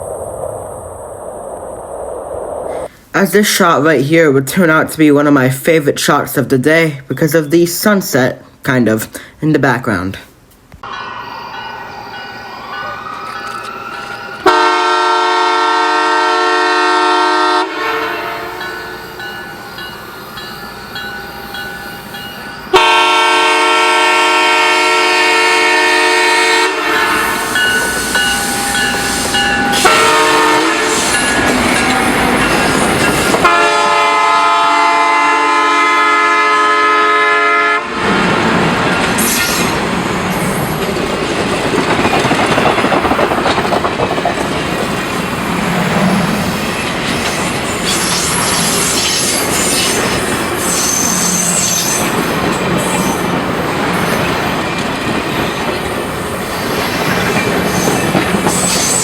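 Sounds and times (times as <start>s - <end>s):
train engine and wheels running: 10.4s - 36.8s, 37.8s - 59.0s
locomotive air horn blasts: 14.4s - 18.7s, 22.7s - 27.7s, 29.1s - 31.3s, 33.4s - 38.0s.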